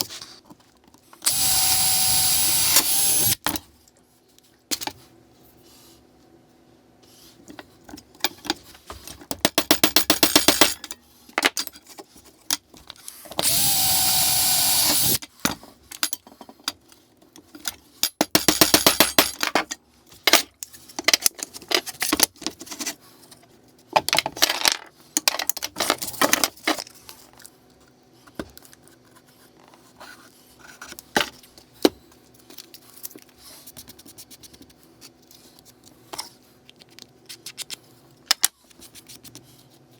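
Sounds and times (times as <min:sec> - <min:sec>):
power drill drilling steel: 0:01.3 - 0:03.5, 0:13.4 - 0:15.2
hammer tapping pins into metal: 0:09.3 - 0:10.9, 0:18.1 - 0:19.4.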